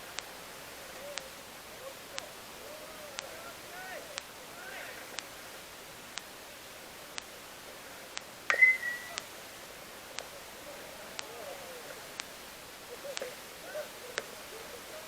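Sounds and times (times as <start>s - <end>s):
faint ticking: 0.0s - 15.0s
bat cracking ball: 8.5s - 9.3s.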